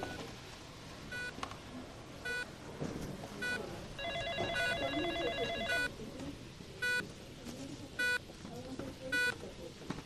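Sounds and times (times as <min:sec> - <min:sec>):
low background murmur: 0:00.0 - 0:10.0
patient monitor beeps: 0:01.1 - 0:01.4, 0:02.2 - 0:02.5, 0:03.4 - 0:06.0, 0:06.8 - 0:07.0, 0:08.0 - 0:08.2, 0:09.1 - 0:09.4.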